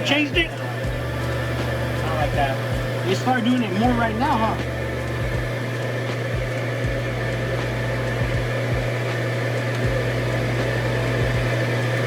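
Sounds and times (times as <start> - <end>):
electric motor hum: 0.0 - 12.0
soft low thuds: 3.8 - 5.6, 6.3 - 9.0, 9.8 - 11.6.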